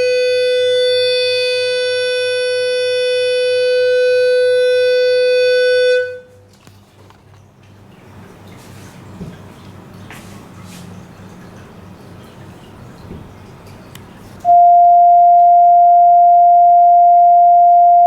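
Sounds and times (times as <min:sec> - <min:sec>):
buzzy test tone from loudspeaker: 0:00.0 - 0:06.4, 0:14.5 - 0:18.0.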